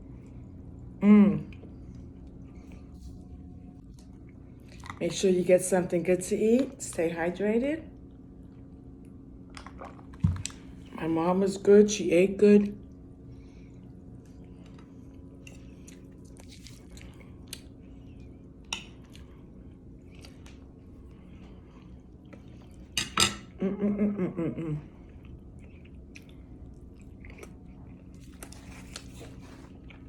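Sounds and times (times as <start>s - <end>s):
person chewing: 13.9s - 23.0s, 24.9s - 30.0s.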